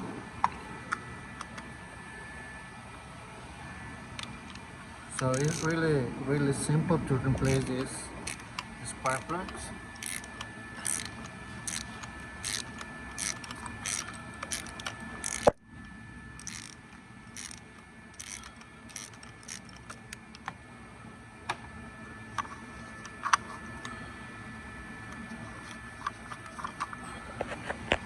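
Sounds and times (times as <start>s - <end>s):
ratchet wrench clicking: 5.1s - 5.8s, 7.4s - 9.3s, 10.0s - 15.6s, 16.4s - 20.4s.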